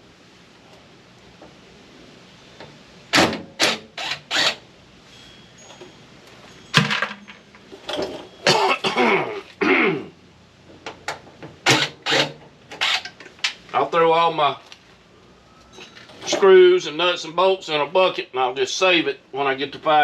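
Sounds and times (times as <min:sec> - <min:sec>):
man coughing: 0:08.5 - 0:10.1
man clearing his throat: 0:08.5 - 0:10.2.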